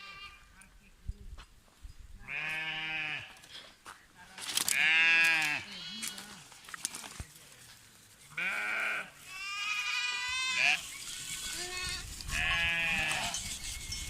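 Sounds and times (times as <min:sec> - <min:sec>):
sheep bleating: 0:00.0 - 0:00.5, 0:02.3 - 0:03.4, 0:04.7 - 0:06.4, 0:08.4 - 0:13.4.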